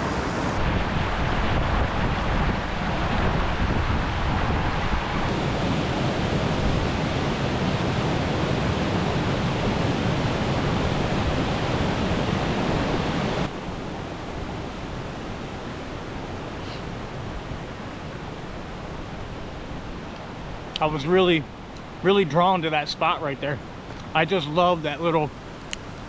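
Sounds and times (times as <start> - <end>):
stream rushing over rocks: 5.3 - 16.2.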